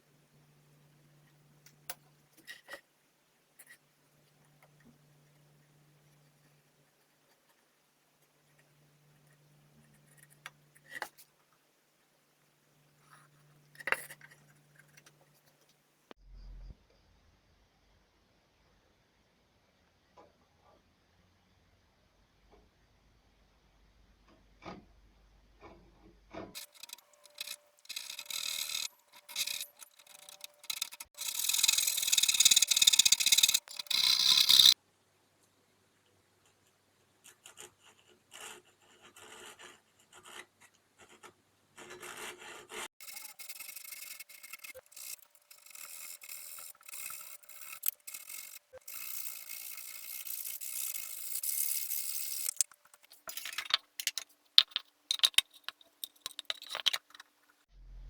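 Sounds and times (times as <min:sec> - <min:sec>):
hand tool scraping wood: 0:26.6 - 0:34.8, 0:41.9 - 0:57.5.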